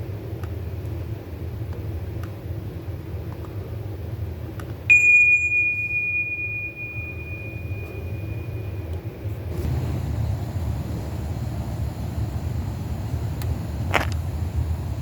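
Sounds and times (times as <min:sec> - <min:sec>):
steady low rumble: 0:00.0 - 0:15.0
metallic ding: 0:04.9 - 0:08.9.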